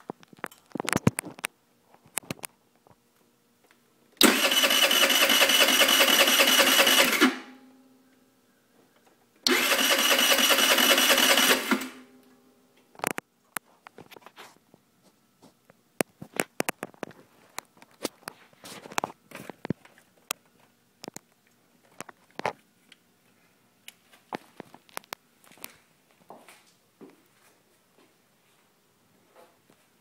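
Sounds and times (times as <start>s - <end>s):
scooter starter cranking: 4.2s - 7.5s, 9.5s - 12.0s.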